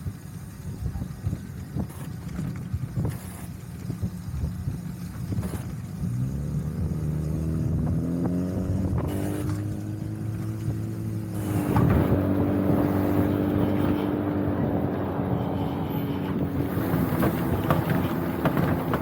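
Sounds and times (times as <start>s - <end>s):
vehicle ride rumble and wind: 0.0s - 19.0s
motor whine: 6.3s - 19.0s.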